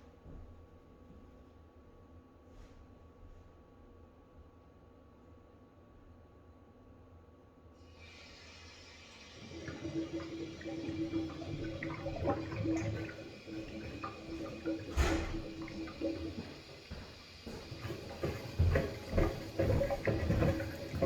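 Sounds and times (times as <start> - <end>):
water rushing through pipes: 8.0 - 21.0.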